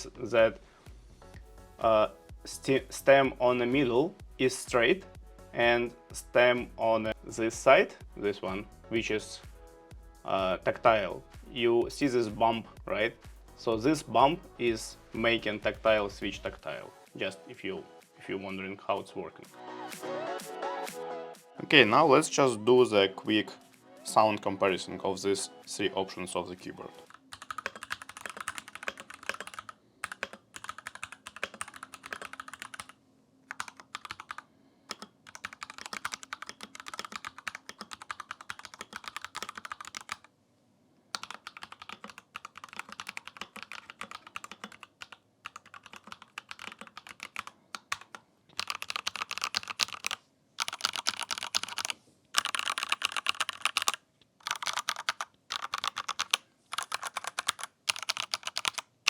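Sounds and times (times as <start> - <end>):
fast mechanical keyboard typing: 27.0 - 40.3, 41.2 - 58.9.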